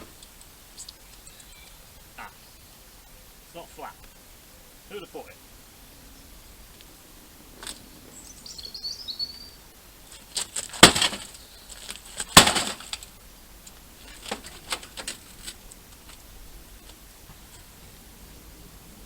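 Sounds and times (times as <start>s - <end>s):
bird chirp: 0.0s - 10.3s, 11.2s - 11.9s.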